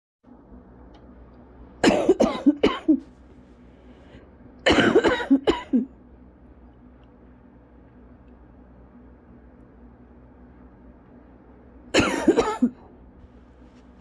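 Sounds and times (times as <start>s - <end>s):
person coughing: 1.8s - 3.1s, 4.6s - 5.9s, 12.0s - 12.9s.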